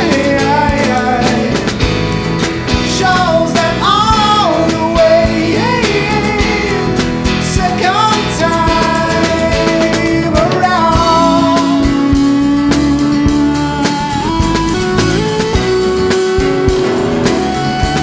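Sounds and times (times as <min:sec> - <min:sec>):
song with guitar and singing: 0:00.0 - 0:18.0.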